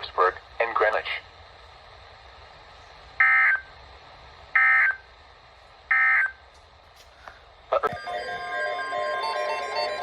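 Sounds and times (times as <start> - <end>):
faint radio hiss: 0.0 - 5.9
digital data tones: 7.8 - 10.0.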